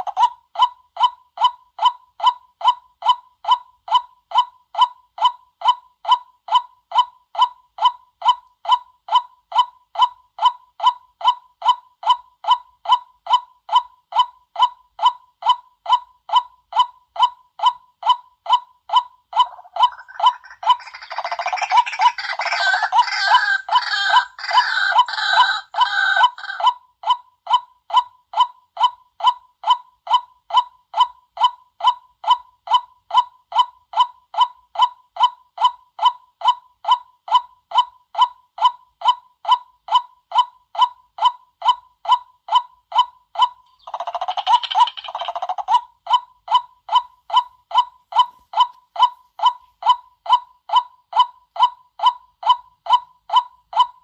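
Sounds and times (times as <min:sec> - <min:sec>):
rough chattering croaks: 0:19.4 - 0:26.6, 0:43.7 - 0:45.7
waterhen kwak calls: 0:19.4 - 0:26.7, 0:43.7 - 0:45.8.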